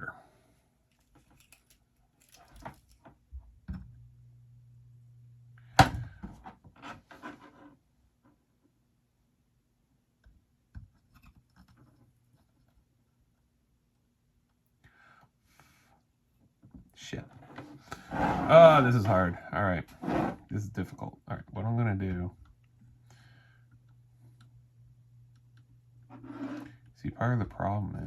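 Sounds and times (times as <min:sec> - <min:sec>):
low hum: 0:03.7 - 0:06.0, 0:22.6 - 0:27.6.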